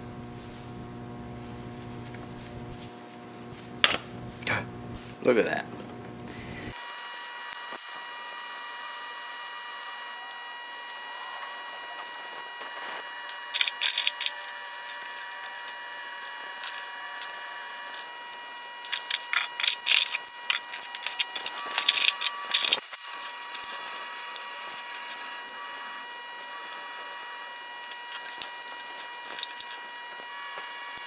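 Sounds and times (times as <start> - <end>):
high electrical whine: 0.0 - 31.0
small metal parts clinking: 13.3 - 25.6, 27.5 - 30.3.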